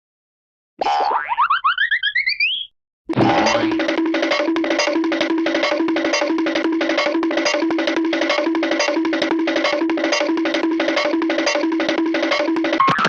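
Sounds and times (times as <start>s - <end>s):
repeated low note: 3.1s - 12.8s
cartoon running patter of knocks: 3.1s - 13.0s.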